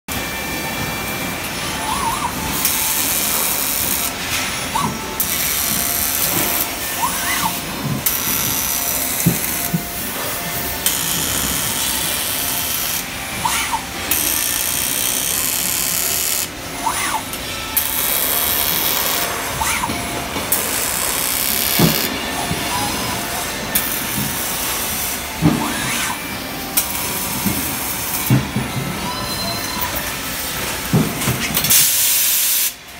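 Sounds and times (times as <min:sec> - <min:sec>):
arc welding hissing crackle: 0:02.5 - 0:16.5, 0:17.8 - 0:19.8, 0:20.5 - 0:22.1, 0:31.6 - 0:32.8.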